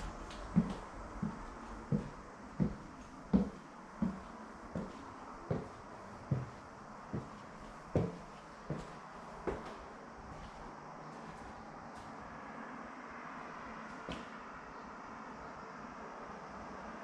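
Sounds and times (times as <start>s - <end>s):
footsteps on indoor floor: 0.0s - 12.1s.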